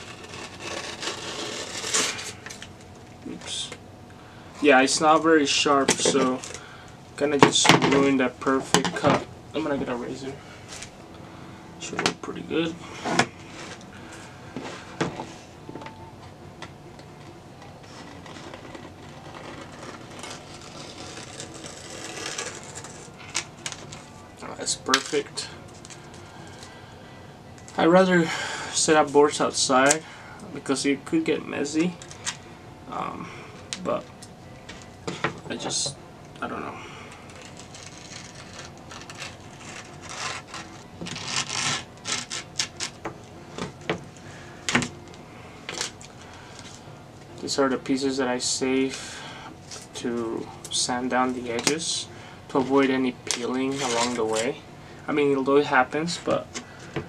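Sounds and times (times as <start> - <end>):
grip tape scraping wood: 0.0 - 2.7, 17.8 - 24.0, 37.3 - 43.0
razor blade scraping grip tape: 37.3 - 43.0.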